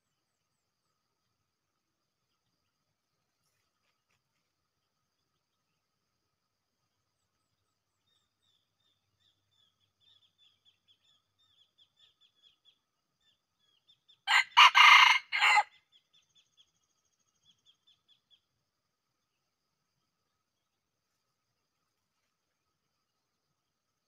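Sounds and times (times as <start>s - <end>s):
rooster crowing: 14.3s - 15.7s.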